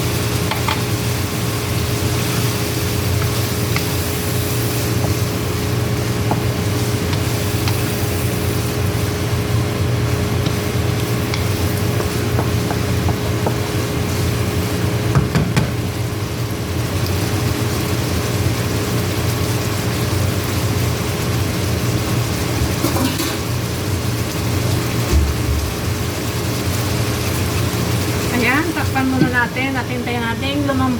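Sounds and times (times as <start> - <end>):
sauce sizzling and simmering in a pan: 0.0 - 30.9
steady low rumble: 25.1 - 26.4.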